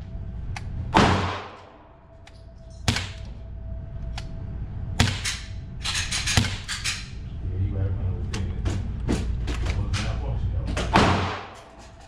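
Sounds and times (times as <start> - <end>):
pistol shots echoing: 1.0 - 1.7, 11.0 - 11.6.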